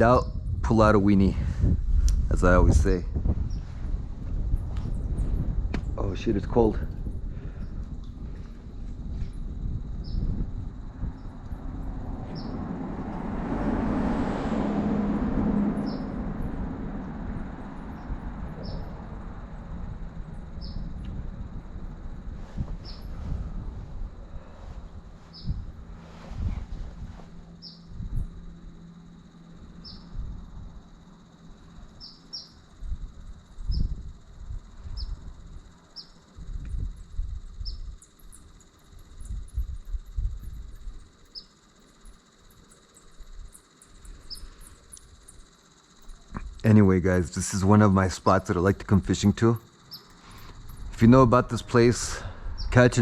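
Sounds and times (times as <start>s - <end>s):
bats chirping: 4.3s - 13.3s, 15.0s - 53.0s
thumps on microphone: 5.6s - 6.0s
vehicle rumbling over bridge: 10.7s - 22.3s.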